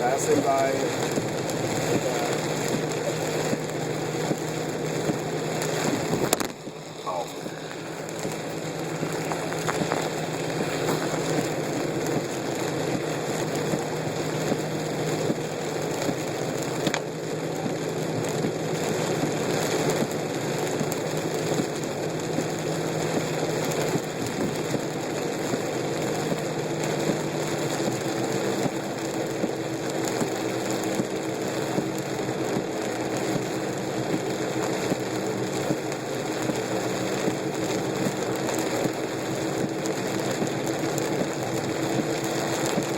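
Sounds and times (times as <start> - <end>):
car engine hum: 0.0 - 42.9
rain on a car: 0.0 - 42.9
tyres on flooded road: 0.0 - 42.9.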